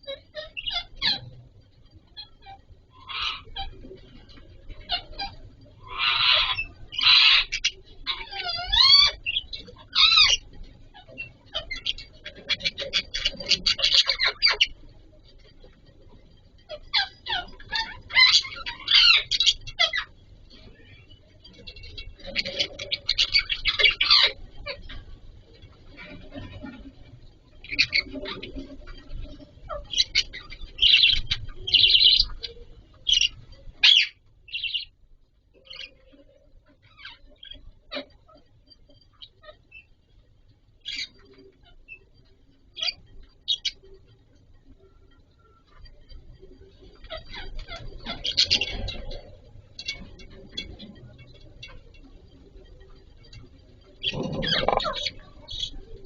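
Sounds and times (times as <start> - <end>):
budgerigar calls: 0.0 - 1.4, 2.2 - 3.8, 4.8 - 10.4, 11.0 - 14.7, 16.8 - 20.1, 21.9 - 24.8, 29.7 - 34.9, 54.0 - 55.7
budgerigar chirps: 2.2 - 3.8, 4.9 - 10.4, 29.9 - 34.9, 54.0 - 55.7.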